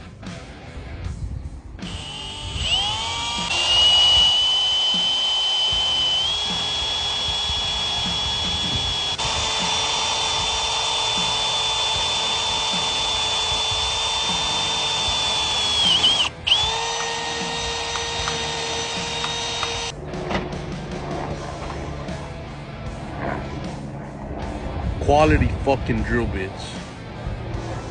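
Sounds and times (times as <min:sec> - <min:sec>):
power drill motor whining: 0:01.8 - 0:19.9.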